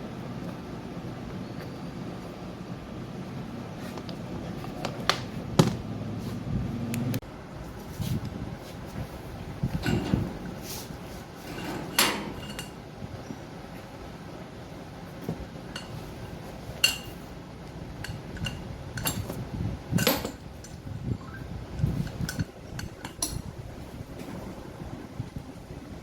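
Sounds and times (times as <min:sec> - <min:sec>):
metal tools clinking: 0:09.8 - 0:12.8, 0:15.7 - 0:17.3, 0:18.0 - 0:20.9, 0:21.8 - 0:23.5.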